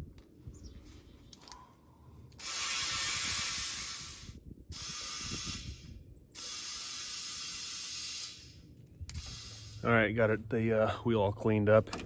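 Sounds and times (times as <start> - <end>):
spray nozzle hissing: 2.4 - 5.8, 6.4 - 8.5.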